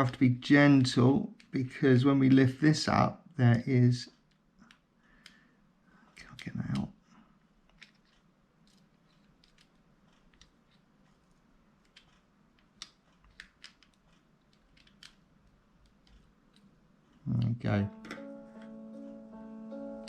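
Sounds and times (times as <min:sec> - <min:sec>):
small clicks of tools and plastic: 0:07.6 - 0:18.7.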